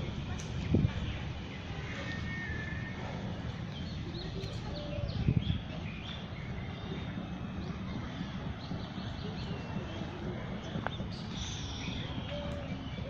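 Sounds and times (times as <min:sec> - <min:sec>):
birds chirping and calling: 0:00.0 - 0:13.0
steady low rumble: 0:03.2 - 0:13.0.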